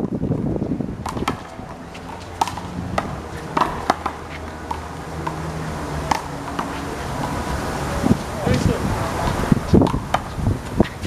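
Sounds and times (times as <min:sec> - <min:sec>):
handball hitting wall: 0:01.0 - 0:05.4.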